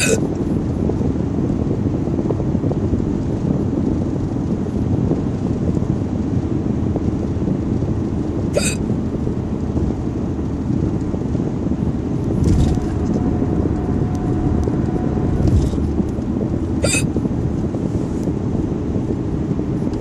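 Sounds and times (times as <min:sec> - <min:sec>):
person hiccuping: 0:00.0 - 0:00.2, 0:08.6 - 0:08.8, 0:16.8 - 0:17.1
steady low rumbling noise: 0:00.0 - 0:20.0.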